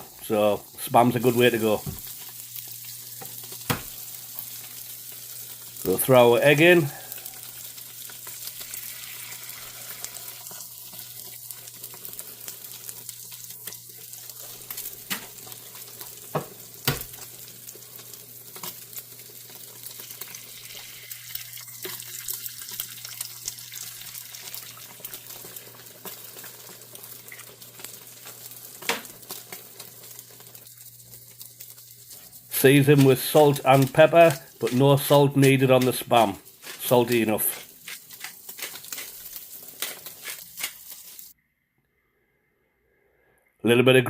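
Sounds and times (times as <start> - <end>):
food sizzling on a griddle: 0.0 - 41.4.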